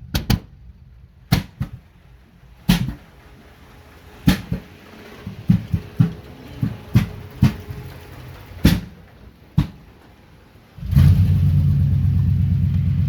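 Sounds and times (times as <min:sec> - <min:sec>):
engine misfiring pops: 0:00.0 - 0:13.0
engine running loud: 0:10.8 - 0:13.0.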